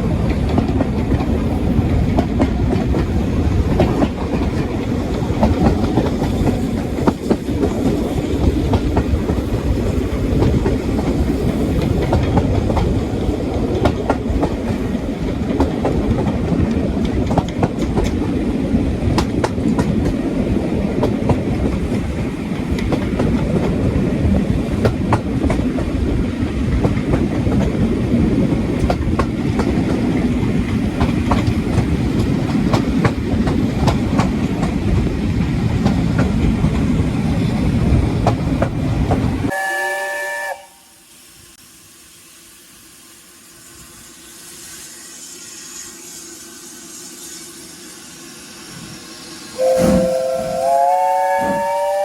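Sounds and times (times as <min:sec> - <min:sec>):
wheels clicking over rail joints: 0:00.0 - 0:39.5
steam train rumbling: 0:00.0 - 0:52.0
steam whistle rising in pitch: 0:39.5 - 0:41.2, 0:49.5 - 0:52.0
steam locomotive chime whistle: 0:39.5 - 0:41.3, 0:49.5 - 0:52.0.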